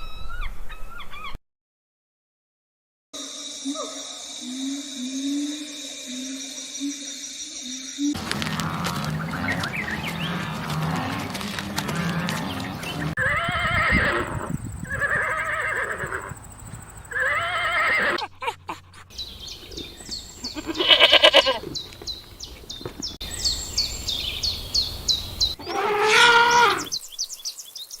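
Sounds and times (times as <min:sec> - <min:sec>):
drawn-out animal calls: 0:08.2 - 0:22.0, 0:25.6 - 0:26.9.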